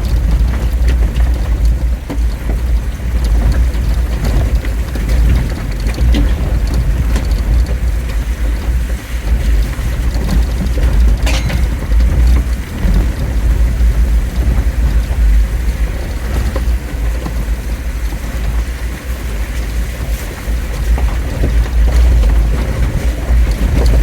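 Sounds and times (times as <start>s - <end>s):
clicks and rattles: 10.0s - 13.8s.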